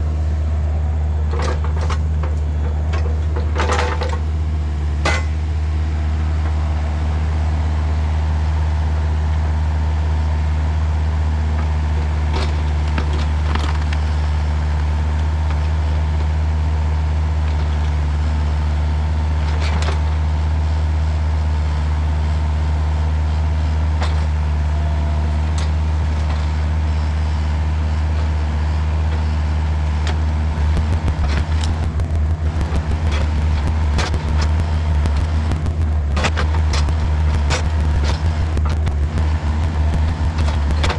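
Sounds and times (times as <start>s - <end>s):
diesel engine running: 30.6s - 40.9s.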